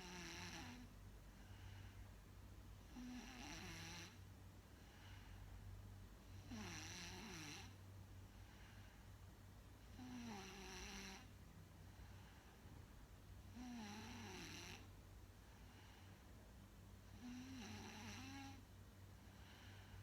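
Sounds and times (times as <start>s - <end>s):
faint snoring: 0.0s - 2.0s, 2.8s - 4.2s, 6.3s - 9.0s, 9.8s - 12.7s, 13.5s - 14.9s, 17.0s - 18.7s, 19.3s - 20.0s.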